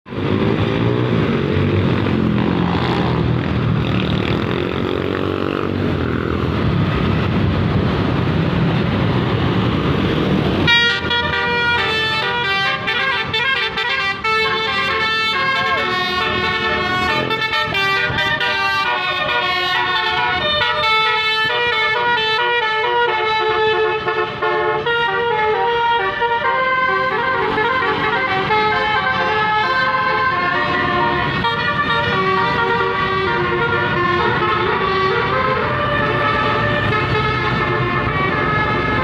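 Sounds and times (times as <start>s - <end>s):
engine and road noise: 0.0s - 39.0s
bus air horn playing a tune: 10.6s - 39.0s.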